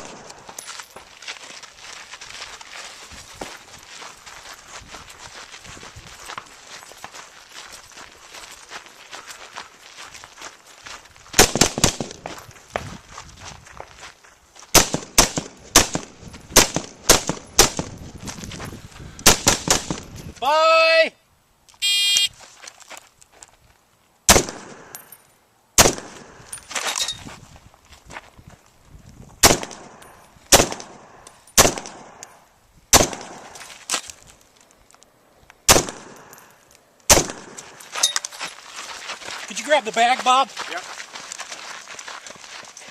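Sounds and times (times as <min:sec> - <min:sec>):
rifle shots: 0:00.0 - 0:00.4, 0:11.4 - 0:12.2, 0:14.8 - 0:17.8, 0:19.2 - 0:20.0, 0:24.3 - 0:24.9, 0:25.8 - 0:26.2, 0:29.4 - 0:32.2, 0:32.9 - 0:33.6, 0:35.7 - 0:36.3, 0:37.1 - 0:37.7.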